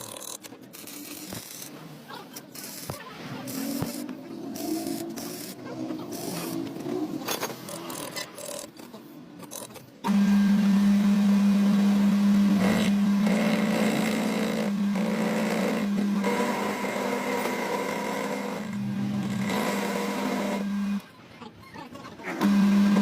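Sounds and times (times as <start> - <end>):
electric motor humming: 10.1 - 21.0, 22.4 - 23.0.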